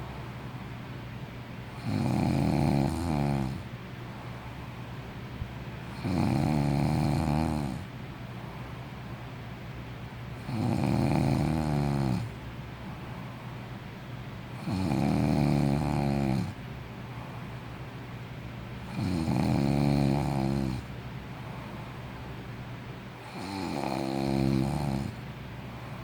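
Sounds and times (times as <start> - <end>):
quiet breathing: 0.0 - 0.9, 3.0 - 5.2, 5.8 - 9.5, 10.3 - 18.2, 18.8 - 26.0
person snoring: 1.8 - 3.6, 5.9 - 7.9, 10.4 - 12.4, 14.6 - 16.6, 18.9 - 20.9, 23.2 - 25.2.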